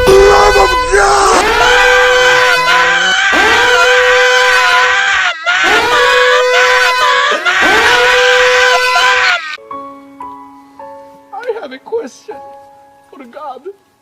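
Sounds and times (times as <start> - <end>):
person screaming: 0.0 - 9.5.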